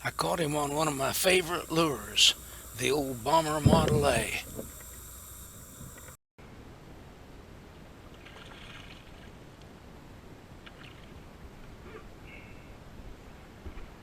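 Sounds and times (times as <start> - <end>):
water and wind noise: 0.0 - 6.1, 7.0 - 14.0
water splashing: 0.0 - 6.1, 8.0 - 9.5.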